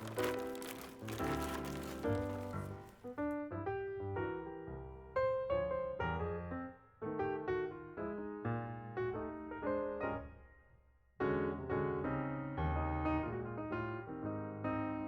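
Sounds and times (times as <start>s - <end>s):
piano music: 0.0s - 3.2s.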